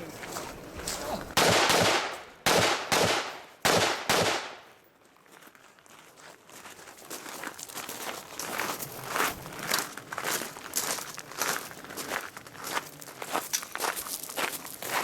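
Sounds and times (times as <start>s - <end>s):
rifle shots echoing: 1.4s - 4.7s.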